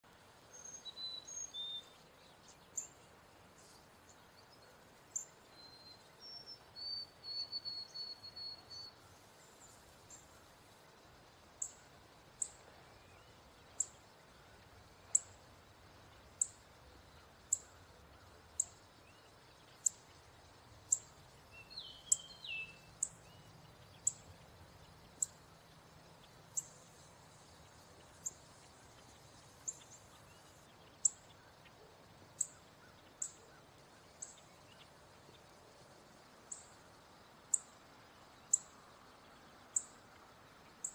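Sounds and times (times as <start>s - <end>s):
outdoor background noise: 0.0s - 40.9s
whistled bird notes: 0.5s - 2.0s, 5.2s - 9.0s, 20.9s - 24.2s.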